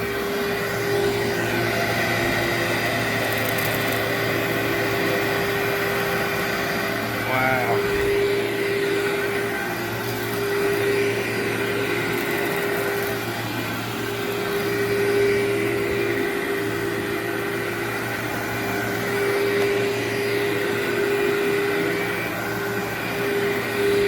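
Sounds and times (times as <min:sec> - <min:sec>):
vacuum cleaner on carpet: 0:00.0 - 0:24.0.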